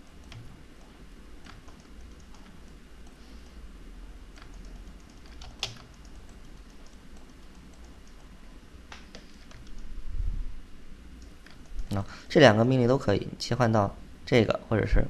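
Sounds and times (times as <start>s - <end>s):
keyboard and mouse clicks: 0.0s - 3.6s, 4.3s - 9.9s, 11.2s - 12.0s
faint low hum: 0.0s - 15.0s.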